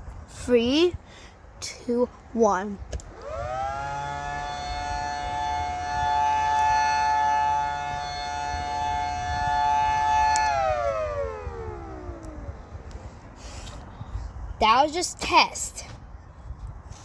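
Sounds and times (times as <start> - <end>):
two-tone siren: 3.3 - 12.8.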